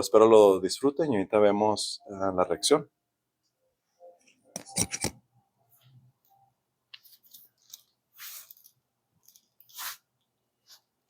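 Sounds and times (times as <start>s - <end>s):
clothing rustling against table: 6.9s - 11.0s.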